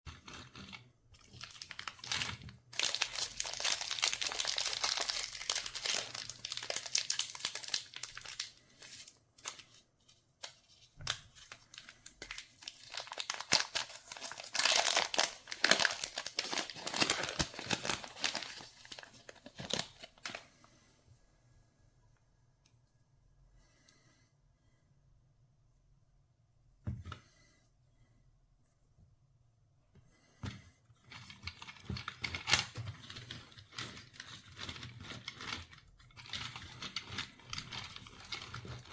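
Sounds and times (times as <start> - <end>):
candy wrappers crinkling and tearing: 0.1 - 9.8, 10.4 - 20.4, 31.2 - 38.9.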